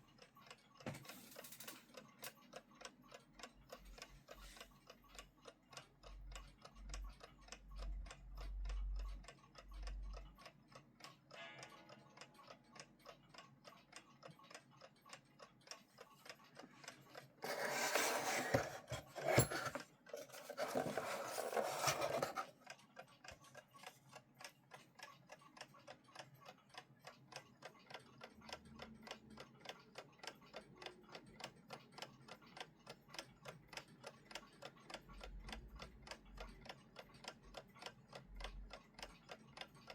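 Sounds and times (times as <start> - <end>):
alarm clock ticking: 4.9 - 22.3.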